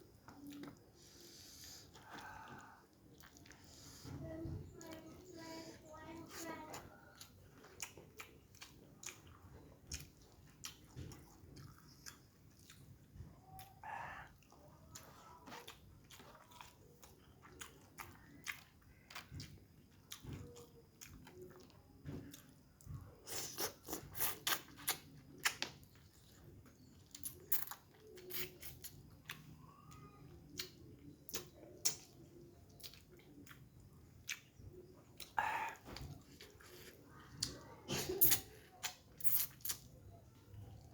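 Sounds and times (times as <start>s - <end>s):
close eating clicks and lip smacks: 0.0s - 1.0s, 1.9s - 3.8s, 6.3s - 40.9s
wet chewing: 0.0s - 40.9s
mouth clicks and smacks: 30.5s - 40.0s.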